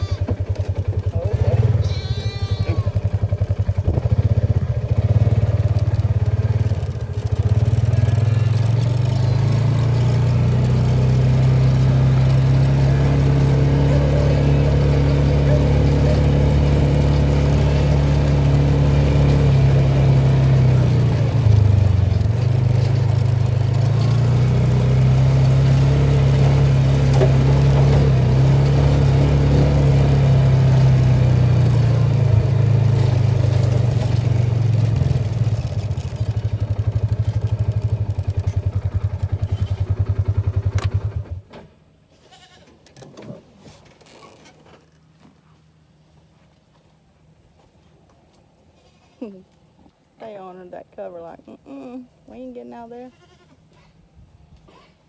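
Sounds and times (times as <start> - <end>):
farm vehicle engine running: 0.0 - 42.5.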